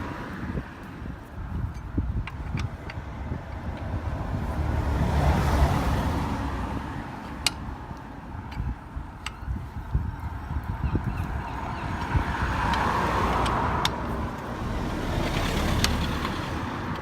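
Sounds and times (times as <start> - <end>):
background traffic rumble: 0.0 - 17.0
car passing: 3.1 - 7.8, 11.3 - 17.0
sharp clicks: 12.0 - 14.6.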